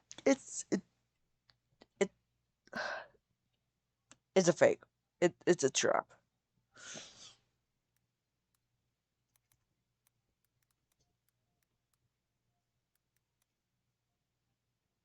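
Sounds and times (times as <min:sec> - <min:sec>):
breathy exhale: 0:06.8 - 0:07.4
faint clicks: 0:09.3 - 0:12.0, 0:12.9 - 0:13.5.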